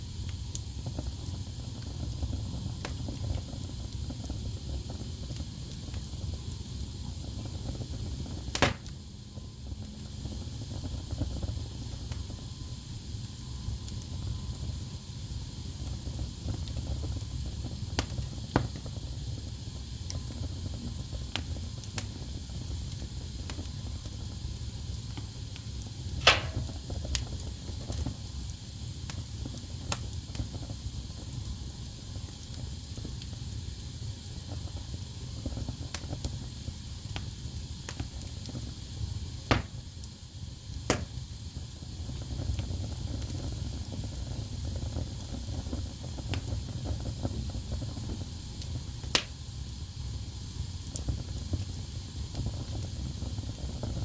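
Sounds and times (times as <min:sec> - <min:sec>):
low rumble of flame: 0:00.0 - 0:54.0
logs crackling and popping: 0:00.3 - 0:06.2, 0:07.4 - 0:09.0, 0:15.8 - 0:28.2, 0:37.9 - 0:40.1, 0:40.8 - 0:41.3, 0:42.1 - 0:49.8
soft hiss: 0:24.4 - 0:27.2.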